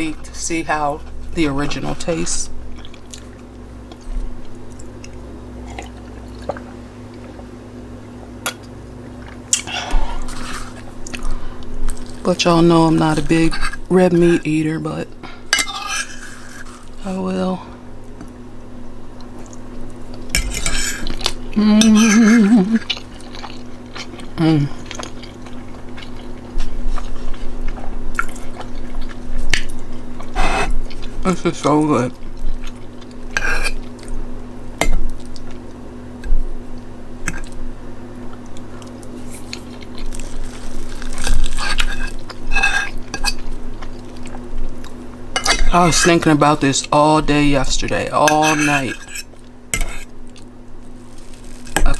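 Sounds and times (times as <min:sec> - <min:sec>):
chewing food: 0:02.7 - 0:07.5, 0:08.5 - 0:13.8, 0:19.2 - 0:34.3, 0:38.2 - 0:45.0
fork scraping a plate: 0:15.6 - 0:16.9, 0:20.4 - 0:22.5, 0:33.3 - 0:33.8, 0:41.4 - 0:43.5, 0:45.4 - 0:46.2, 0:48.2 - 0:50.1
person humming mmm: 0:21.5 - 0:23.0, 0:24.3 - 0:24.9.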